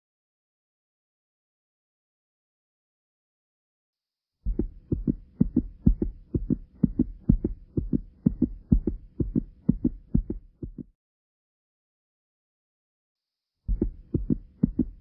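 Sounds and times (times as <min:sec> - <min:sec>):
heartbeat thumps: 0:04.5 - 0:10.9, 0:13.7 - 0:15.0.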